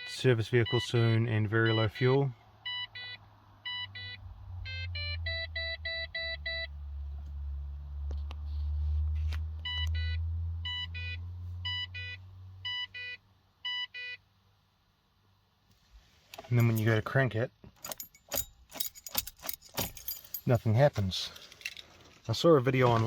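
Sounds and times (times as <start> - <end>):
dashboard warning beeps: 0.0 - 6.8, 9.6 - 14.2.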